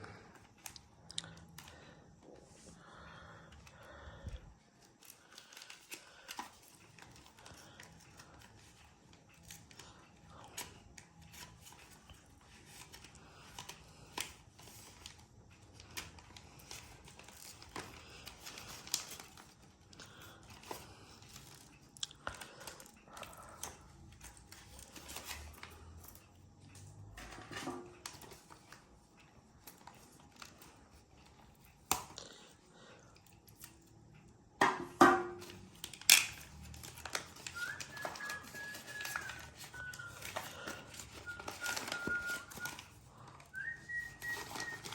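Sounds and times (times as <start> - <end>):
packaging crinkling and tearing: 4.8 - 26.3, 35.4 - 44.9.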